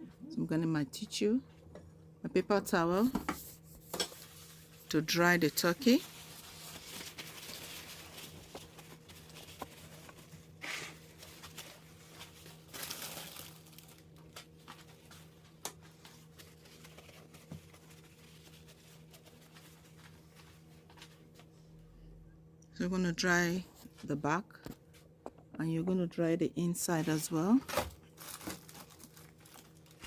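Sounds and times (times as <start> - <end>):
paper towel rustling and crinkling: 3.5 - 21.5, 27.0 - 30.0.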